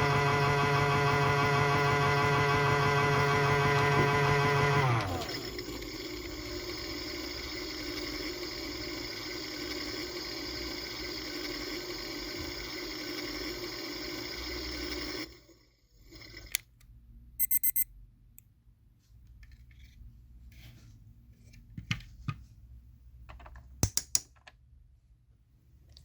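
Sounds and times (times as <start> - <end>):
washing machine running: 0.0 - 16.5
short high electronic beeps: 17.4 - 17.9.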